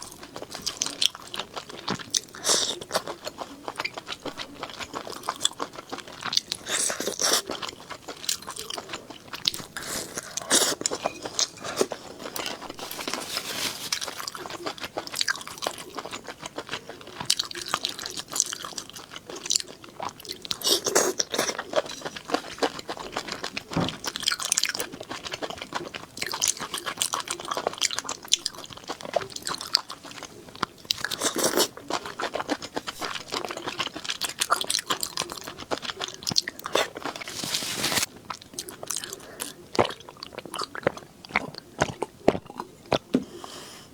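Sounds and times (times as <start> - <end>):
person chewing crunchy food: 0.0 - 43.6
wet mouth sounds: 34.8 - 43.5.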